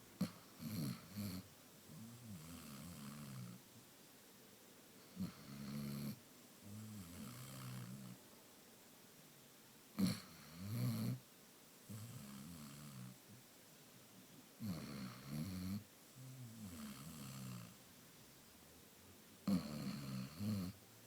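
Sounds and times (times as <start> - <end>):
dog snoring: 0.2 - 3.6, 5.0 - 8.2, 10.0 - 11.2, 11.9 - 13.2, 14.6 - 17.8, 19.4 - 20.8
dog snorting: 19.5 - 20.7.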